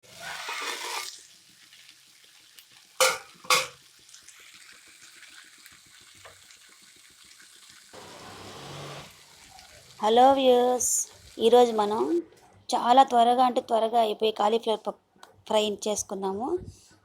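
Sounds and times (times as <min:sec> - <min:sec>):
utensil knocking on pan: 0:03.0 - 0:03.8.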